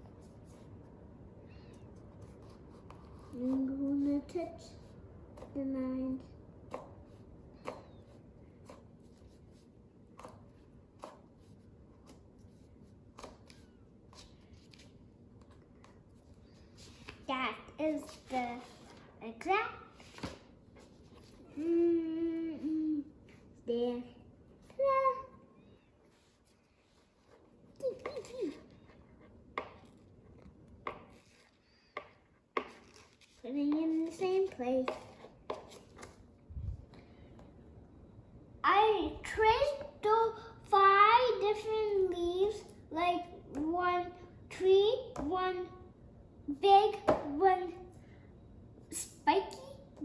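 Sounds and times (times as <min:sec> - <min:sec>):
child humming: 0:21.5 - 0:23.1.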